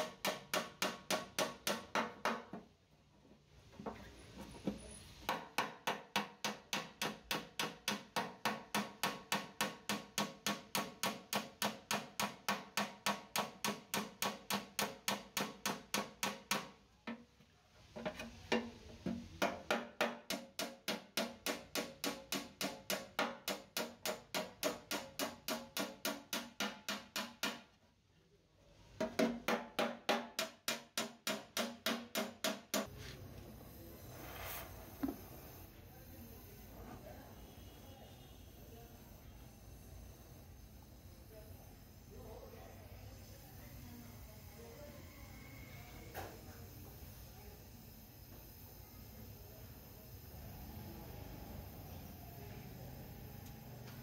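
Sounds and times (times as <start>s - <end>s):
hammer striking metal: 19.4s - 27.6s.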